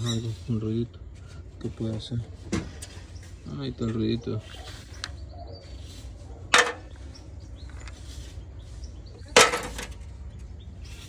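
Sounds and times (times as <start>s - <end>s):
truck sharp knocks: 9.3s - 10.1s.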